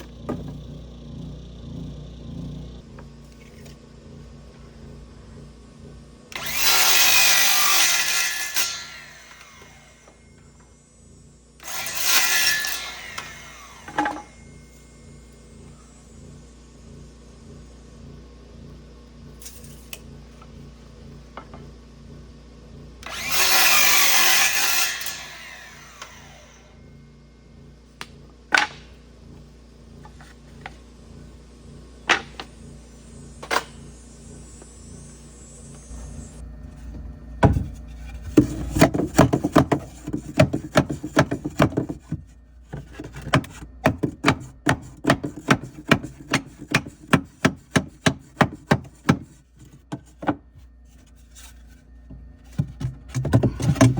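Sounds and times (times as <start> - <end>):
loud rasping burst: 0.0 - 10.4
rhythmic strokes on wood: 0.0 - 53.9.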